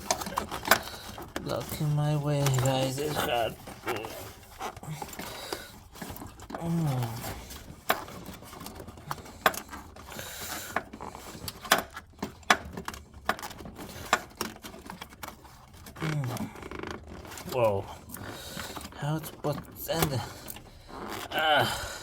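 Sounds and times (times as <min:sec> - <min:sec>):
person grunting: 0:06.6 - 0:07.4, 0:17.5 - 0:17.9, 0:21.3 - 0:22.0.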